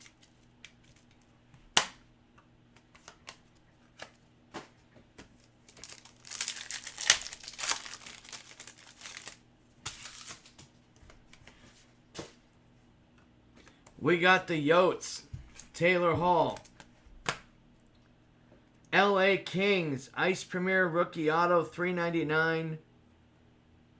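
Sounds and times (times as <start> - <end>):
card pack wrappers crinkling and tearing: 0.0 - 2.0, 2.8 - 11.4.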